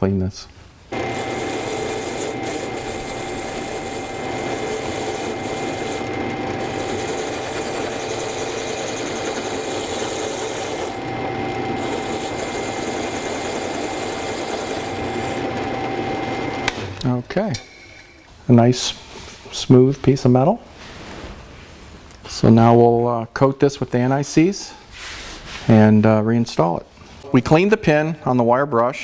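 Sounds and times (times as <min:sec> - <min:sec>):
wire wheel scratching metal pin: 0:01.0 - 0:15.6.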